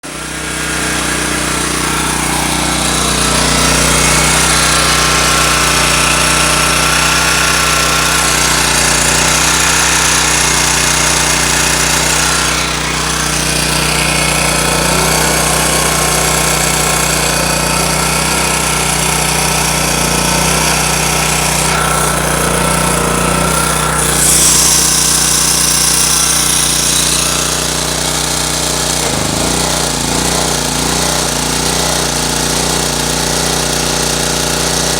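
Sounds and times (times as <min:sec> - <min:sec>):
portable generator running: 0:00.0 - 0:34.9
thin whine: 0:01.9 - 0:27.9.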